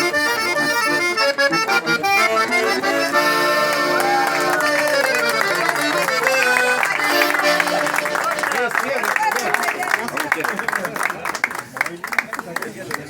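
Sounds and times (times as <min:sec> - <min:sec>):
button accordion playing a tune: 0:00.0 - 0:08.9.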